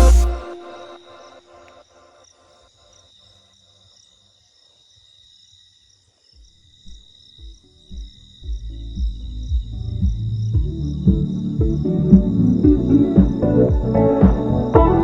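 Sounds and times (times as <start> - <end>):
deep bass beats: 0.0 - 0.4, 7.4 - 15.0
steady high trill: 0.0 - 1.7
electronic music: 0.0 - 1.8, 8.5 - 15.0.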